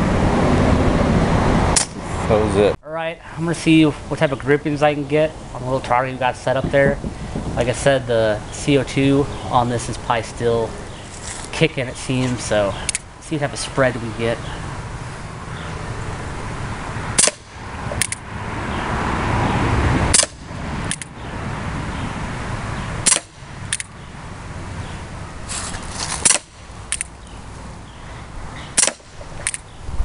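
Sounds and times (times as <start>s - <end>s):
air pistol shots popping: 17.2s - 18.2s, 20.1s - 21.1s, 23.0s - 23.9s, 26.2s - 27.1s, 28.8s - 29.6s.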